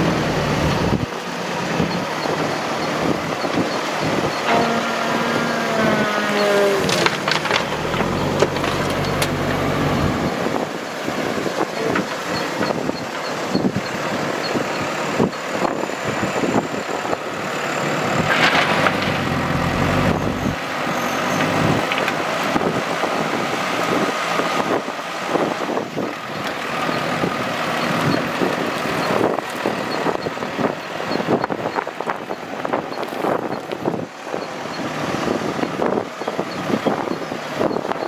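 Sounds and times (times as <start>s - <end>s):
heavy diesel machinery working: 0.0s - 38.0s
knocks and clatters: 3.4s - 9.9s, 18.2s - 20.6s.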